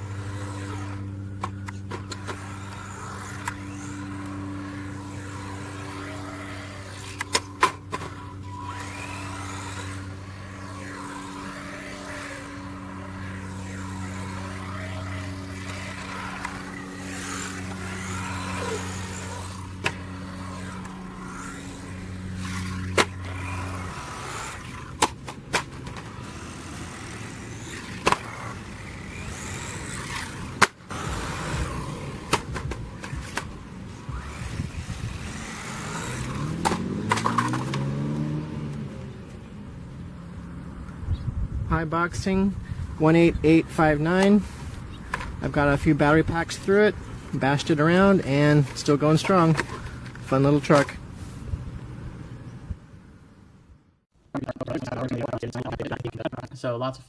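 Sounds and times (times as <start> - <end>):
rising motor whine: 0.0 - 39.4.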